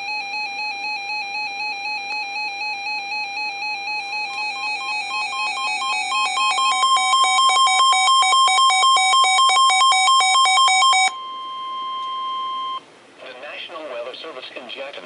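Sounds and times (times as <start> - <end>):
electronic beeping tones: 2.9 - 12.8.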